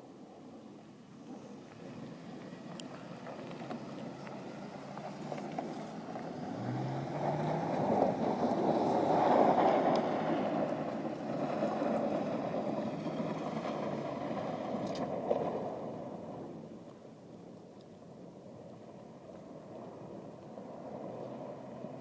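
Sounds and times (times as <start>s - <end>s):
car engine revving hard: 3.8s - 14.7s.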